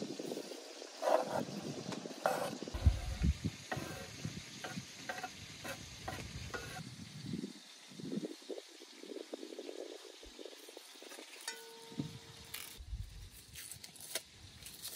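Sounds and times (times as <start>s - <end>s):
food sizzling: 1.6s - 6.9s.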